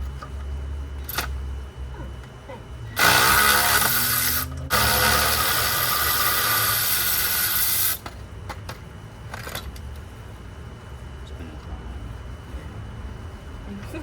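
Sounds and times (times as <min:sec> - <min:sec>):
electric ratchet whirring: 0:01.0 - 0:01.4, 0:02.9 - 0:08.2.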